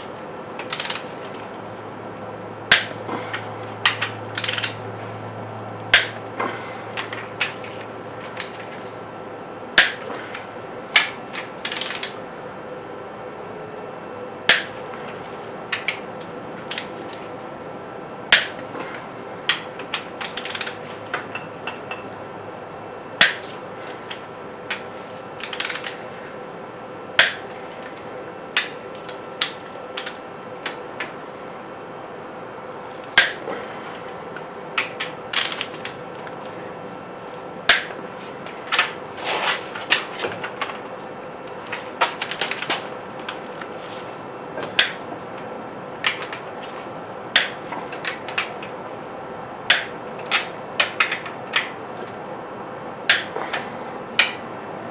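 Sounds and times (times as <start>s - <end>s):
torque wrench clicking: 0.6s - 1.1s, 3.8s - 4.8s, 11.0s - 12.1s, 20.2s - 20.8s, 25.4s - 26.0s.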